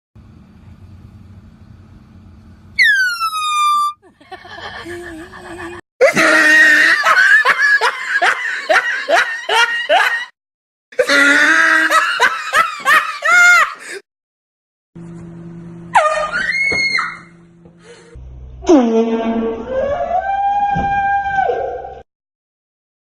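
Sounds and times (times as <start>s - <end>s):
laughter in quick pulses: 4.0s - 10.3s.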